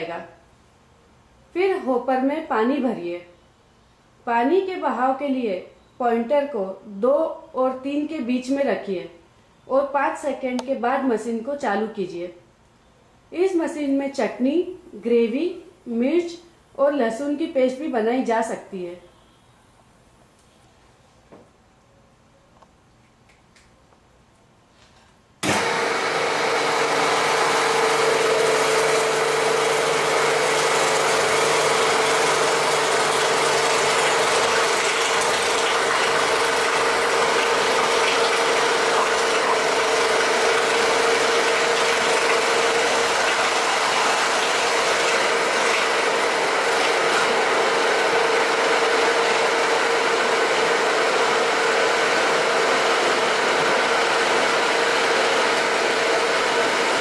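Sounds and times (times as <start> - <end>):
stone wet grinder running: 25.4 - 57.0.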